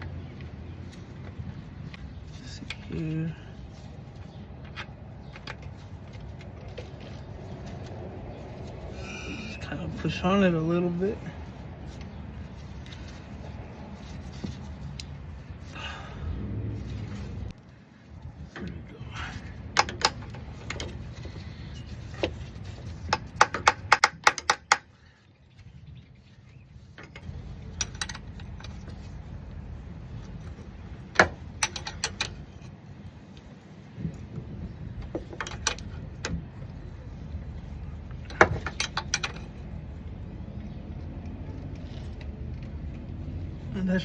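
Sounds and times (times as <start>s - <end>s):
steady low rumble: 14.8s - 21.9s.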